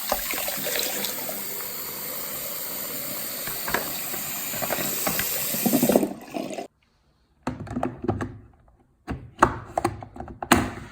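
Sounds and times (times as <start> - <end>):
water running: 0.0 - 6.7.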